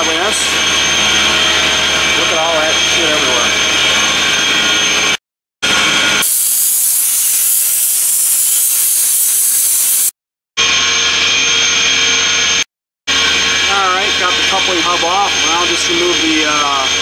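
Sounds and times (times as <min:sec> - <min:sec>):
air compressors droning: 0:06.2 - 0:10.1
loud spray hiss: 0:06.2 - 0:10.1.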